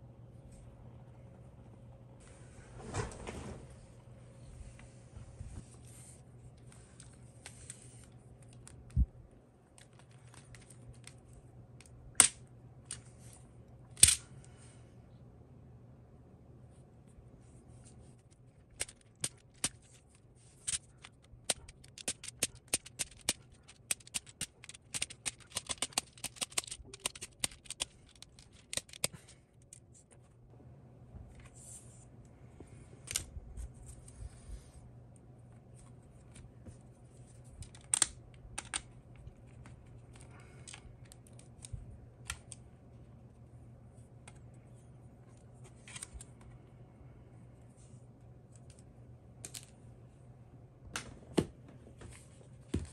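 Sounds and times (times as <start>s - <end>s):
plastic keyboard parts clicking: 18.7s - 19.8s, 20.7s - 29.8s, 37.6s - 39.3s.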